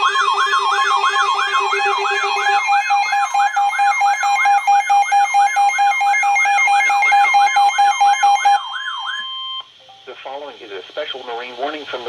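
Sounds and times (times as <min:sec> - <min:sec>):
warbling siren-like alert tone: 0:00.0 - 0:09.6.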